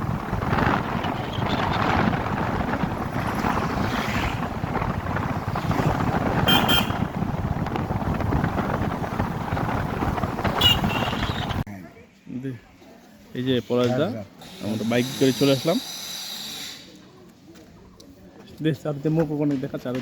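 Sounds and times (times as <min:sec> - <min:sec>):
motorcycle engine: 0:00.0 - 0:11.6
wind buffeting microphone: 0:00.0 - 0:11.7.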